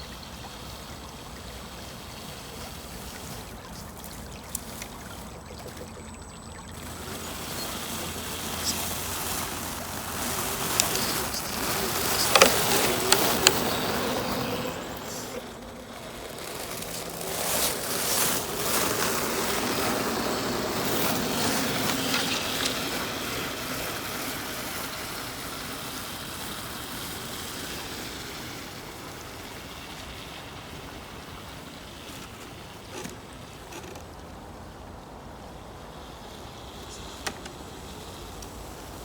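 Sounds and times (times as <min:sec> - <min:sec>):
toy truck motor whirring: 0:02.7 - 0:28.8, 0:32.1 - 0:34.1.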